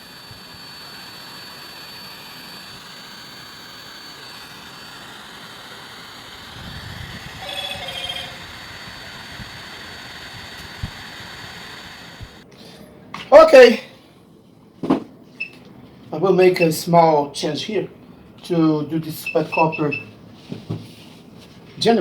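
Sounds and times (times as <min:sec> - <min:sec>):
cooling fan whir with whine: 0:00.0 - 0:22.0
rapid electronic beeps: 0:07.4 - 0:08.4, 0:19.2 - 0:20.0.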